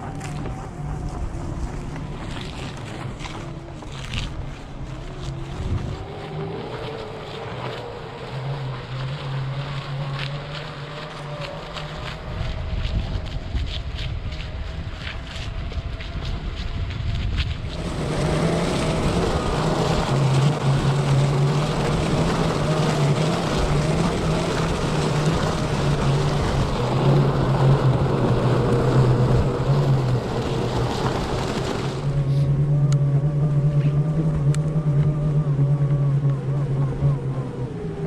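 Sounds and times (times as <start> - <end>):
loud rushing noise: 17.7 - 32.5
electric motor hum: 17.7 - 38.0.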